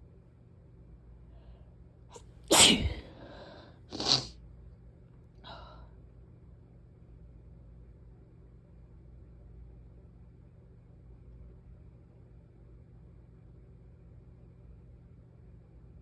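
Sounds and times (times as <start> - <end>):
person sneezing: 2.5 - 4.3
short breath: 2.6 - 4.2.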